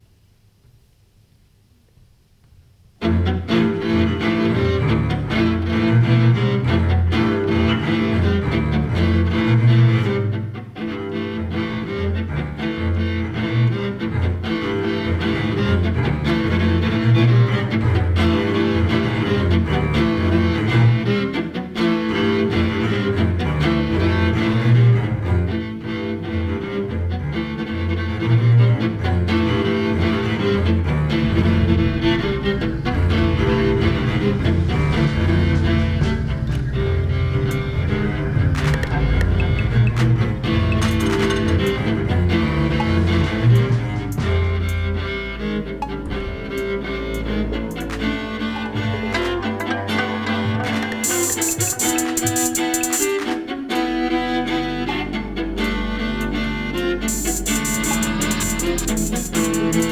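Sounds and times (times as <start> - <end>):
live ensemble music: 30.4 - 59.9.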